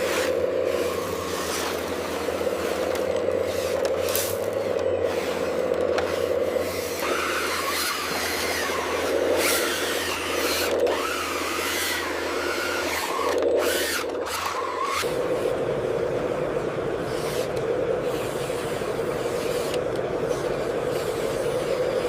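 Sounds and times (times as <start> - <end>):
scraping and grinding: 0.0 - 15.1
small electric motors whining: 0.0 - 15.7, 16.8 - 22.0
steady low hum: 0.0 - 22.0.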